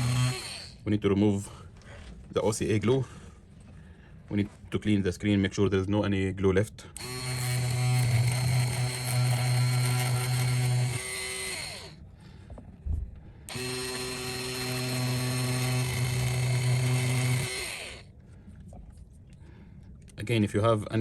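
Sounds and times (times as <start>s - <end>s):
electric rotary tool running: 0.0s - 0.8s, 7.0s - 12.0s, 13.5s - 18.1s.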